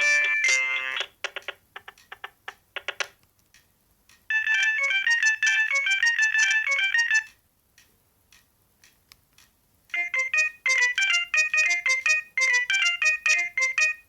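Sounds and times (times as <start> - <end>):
polyphonic ringtone melody: 0.0 - 1.1, 4.3 - 7.3, 10.0 - 14.0
faint clicks: 7.3 - 10.0.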